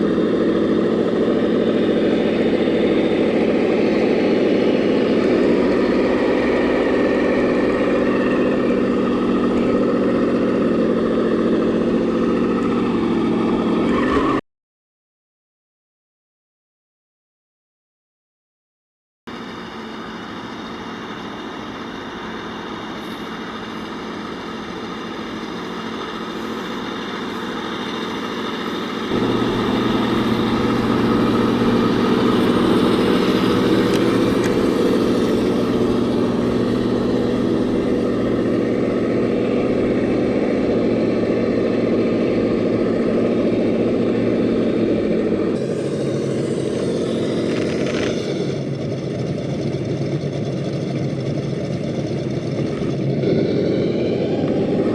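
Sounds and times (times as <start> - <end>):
engine-like drone: 0.0 - 14.4, 19.3 - 54.9.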